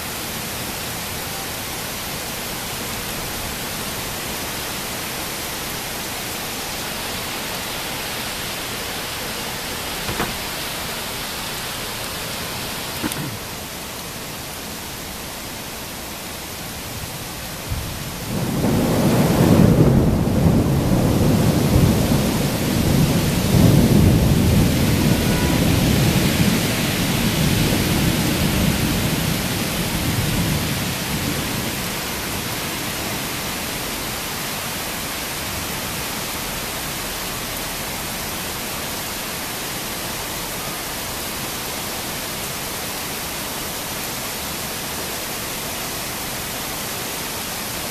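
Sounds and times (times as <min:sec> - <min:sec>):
heavy rain hiss: 0:00.0 - 0:47.9
thunder rumbling: 0:17.7 - 0:31.8.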